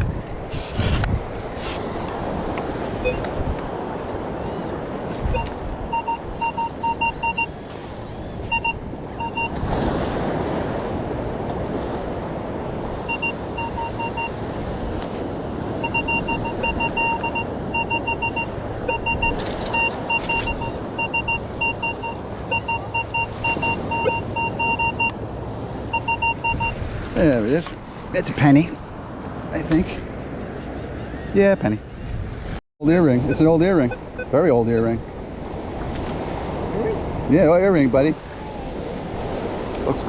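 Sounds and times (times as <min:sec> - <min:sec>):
wind noise: 0:00.0 - 0:25.2, 0:25.8 - 0:29.0, 0:31.6 - 0:32.6
surf: 0:00.0 - 0:40.0
pinpointer beeping in short pulses: 0:05.3 - 0:07.5, 0:15.8 - 0:25.1, 0:25.9 - 0:26.8.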